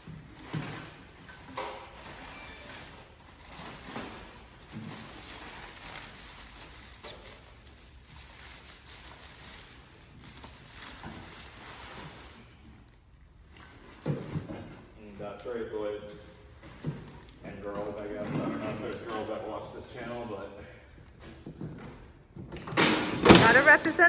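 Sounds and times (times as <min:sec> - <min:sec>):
handling noises: 0:00.0 - 0:15.3, 0:16.0 - 0:19.8
cover rustling and scuffing: 0:13.7 - 0:15.0.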